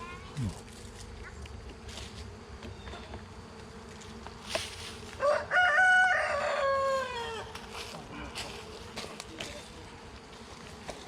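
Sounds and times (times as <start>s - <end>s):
honey bees humming: 0.0s - 11.0s
rooster crowing: 5.1s - 7.6s.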